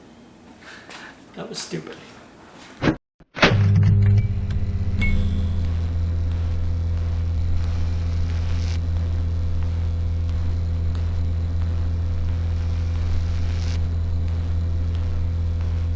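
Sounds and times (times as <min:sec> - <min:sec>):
low electrical hum: 0:03.6 - 0:15.9.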